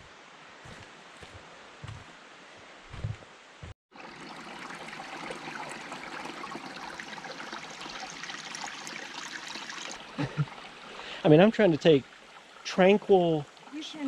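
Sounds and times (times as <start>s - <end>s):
stream trickling over rocks: 3.9s - 14.0s.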